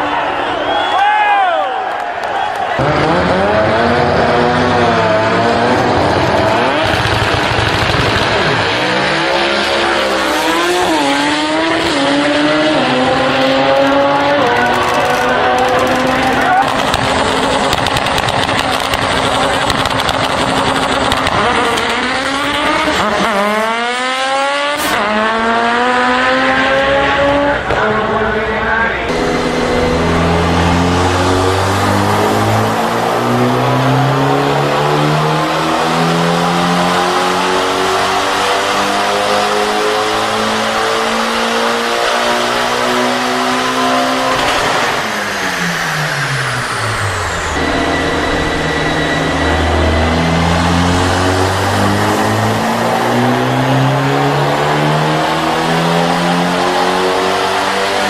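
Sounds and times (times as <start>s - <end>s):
car engine accelerating: 2.7s - 58.0s
high whistle winding down: 44.9s - 54.2s.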